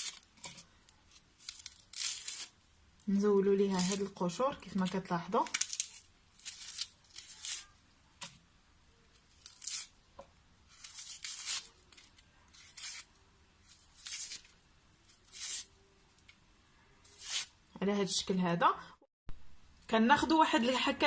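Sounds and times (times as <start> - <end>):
onion skin peeling: 0.0 - 7.8, 9.1 - 10.0, 10.6 - 15.8, 17.0 - 17.6.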